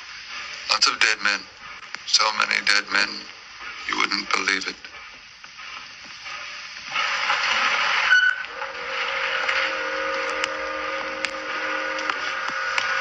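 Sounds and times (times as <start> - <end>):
steam hissing: 0.0 - 13.0
steam train whistle: 8.0 - 13.0.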